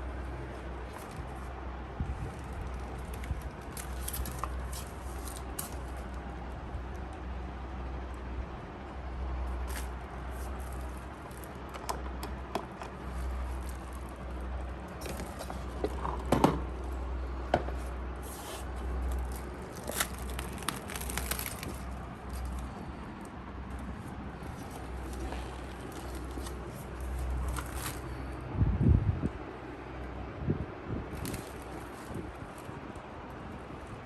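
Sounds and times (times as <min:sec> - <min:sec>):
packaging scraping and crackling: 0:02.2 - 0:06.3, 0:09.5 - 0:28.4, 0:31.1 - 0:33.1.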